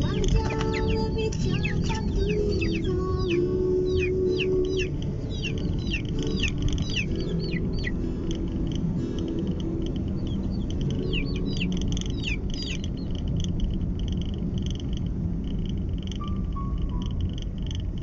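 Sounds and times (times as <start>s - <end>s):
bird chirping: 0.0s - 13.5s
car rumble on road: 0.0s - 18.0s.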